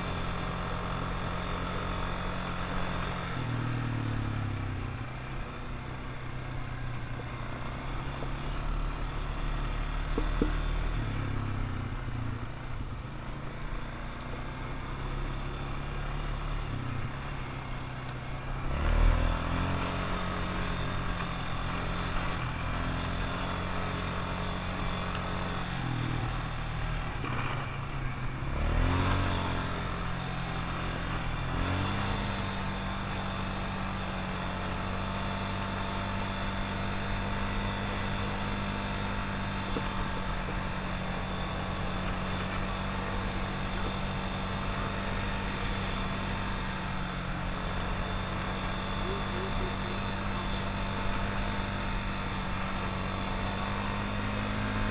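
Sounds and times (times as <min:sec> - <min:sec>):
atv engine revving: 0:14.2 - 0:54.9.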